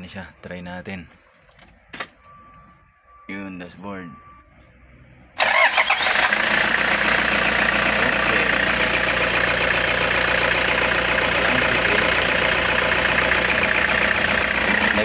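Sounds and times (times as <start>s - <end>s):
van engine idling: 5.4s - 15.0s.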